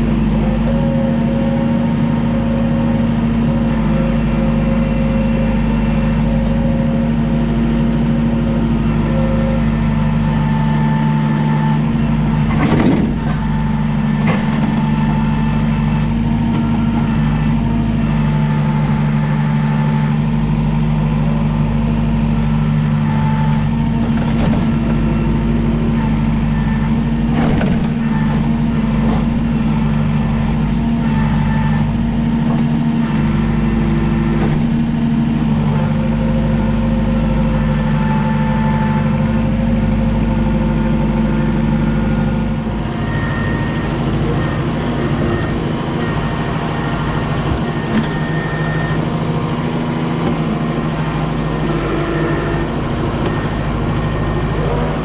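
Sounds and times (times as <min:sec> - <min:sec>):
heavy vehicle engine running: 0:00.0 - 0:55.0
clunk: 0:11.6 - 0:20.0, 0:23.0 - 0:35.8, 0:43.0 - 0:49.0, 0:50.1 - 0:50.7, 0:51.6 - 0:55.0.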